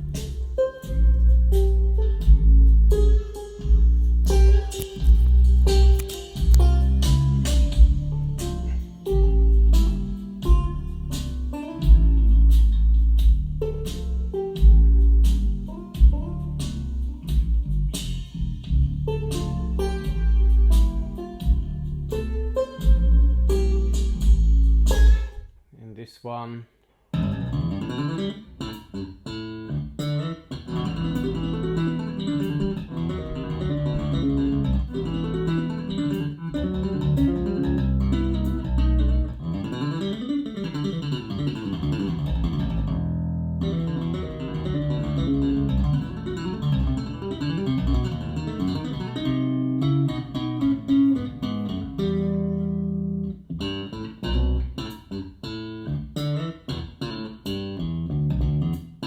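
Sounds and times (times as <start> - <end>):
bass-heavy music with guitars: 0.0 - 25.5, 27.2 - 59.0.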